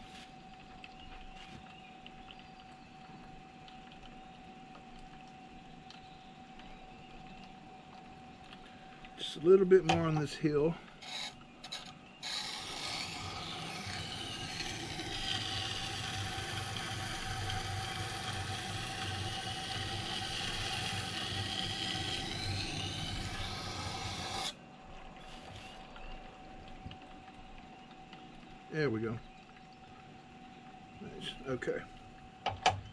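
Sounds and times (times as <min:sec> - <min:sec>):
machine hum: 0:02.0 - 0:32.9
knife grinding on sharpening stone: 0:11.0 - 0:16.2, 0:19.6 - 0:24.5.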